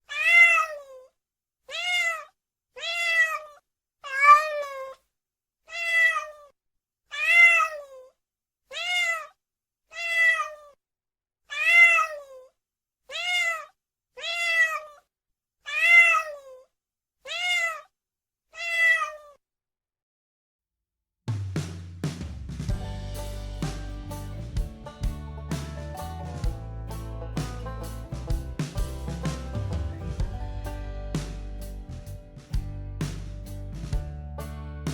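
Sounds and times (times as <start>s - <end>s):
cat meowing: 0.0s - 1.1s, 1.7s - 5.0s, 5.7s - 6.5s, 7.1s - 8.1s, 8.7s - 10.8s, 11.5s - 12.5s, 13.1s - 15.0s, 15.7s - 16.6s, 17.2s - 17.9s, 18.5s - 19.4s.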